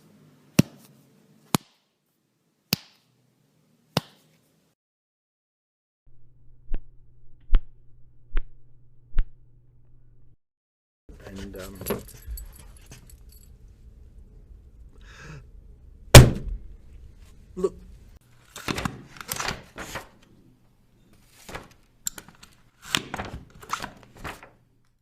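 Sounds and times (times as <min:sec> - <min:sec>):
punch sound effects: 0:16.2 - 0:16.6.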